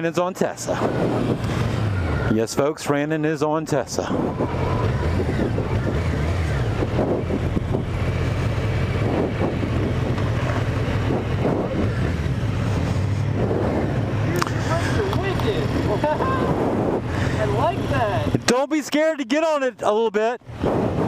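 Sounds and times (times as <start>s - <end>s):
wind noise on microphone: 0.6s - 2.3s, 3.7s - 18.5s, 20.4s - 21.0s
motorcycle engine running: 0.8s - 2.4s, 4.0s - 18.5s.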